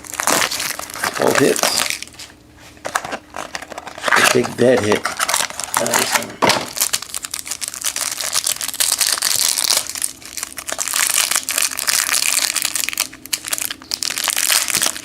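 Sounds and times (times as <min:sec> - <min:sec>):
plastic wrapper crinkling: 0:00.0 - 0:15.0.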